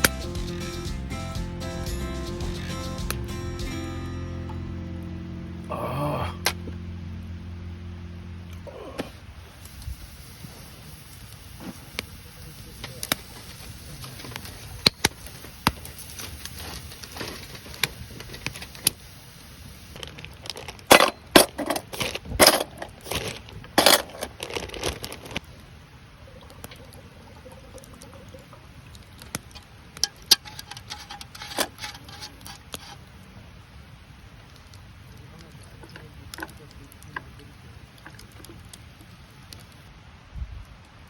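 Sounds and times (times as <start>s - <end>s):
cookware clattering: 30.0s - 32.7s
utensils clinking and knocking: 30.0s - 33.0s.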